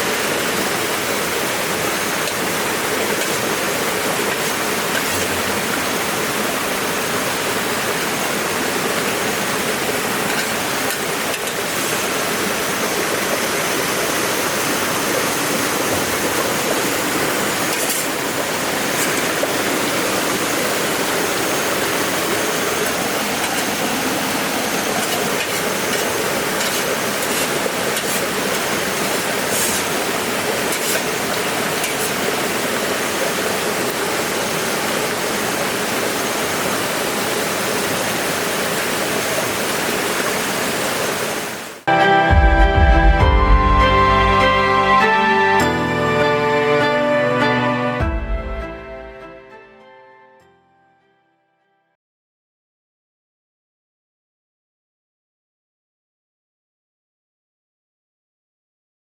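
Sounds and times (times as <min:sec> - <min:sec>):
river water rushing: 0:00.0 - 0:42.0.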